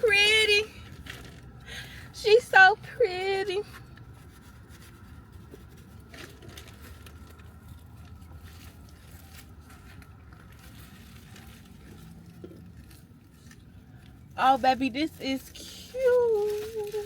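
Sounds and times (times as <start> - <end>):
low steady hum: 0.0 - 17.0
packaging rustling: 15.9 - 17.0.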